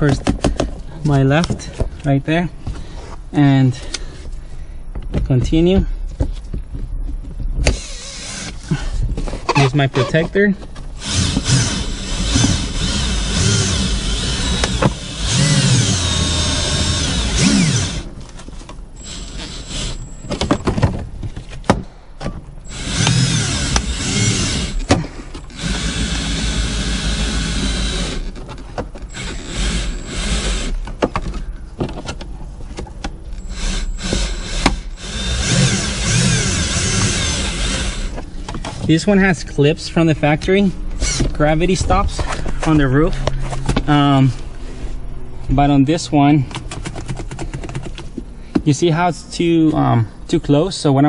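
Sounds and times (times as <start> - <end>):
power cutting tool motor whine: 11.0 - 18.1, 19.0 - 20.6, 22.7 - 24.9, 25.5 - 28.3, 29.1 - 30.8, 33.4 - 38.2.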